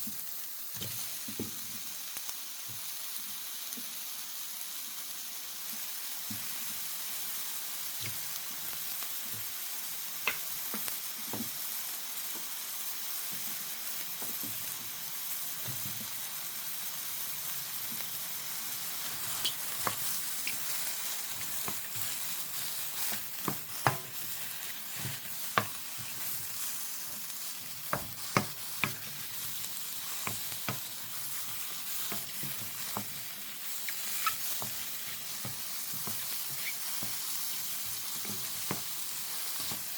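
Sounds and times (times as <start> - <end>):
mushrooms sizzling in a frying pan: 0.0 - 39.9
utensil clicking on a pan: 27.6 - 37.3.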